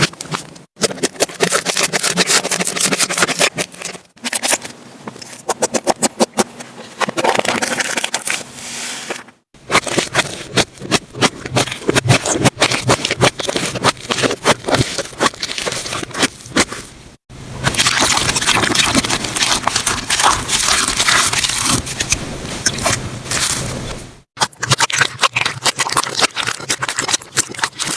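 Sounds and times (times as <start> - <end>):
slime crackling and popping: 17.6 - 23.6.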